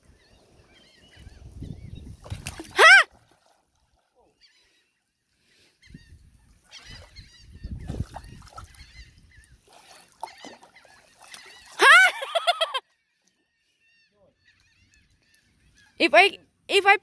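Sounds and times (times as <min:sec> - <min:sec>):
birds calling: 0:05.7 - 0:12.8, 0:13.6 - 0:17.0.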